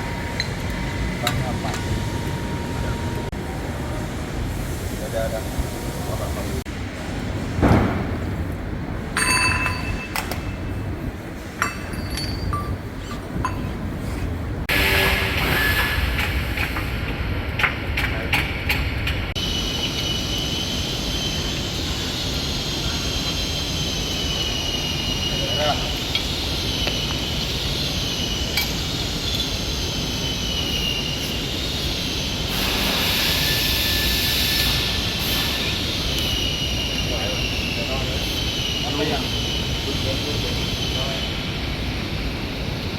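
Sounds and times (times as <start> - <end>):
machine noise with high whine: 0.0 - 13.8, 14.5 - 42.9
low workshop rumble: 0.0 - 42.9
steel parts clinking: 11.6 - 13.8
loud hiss: 19.4 - 42.9.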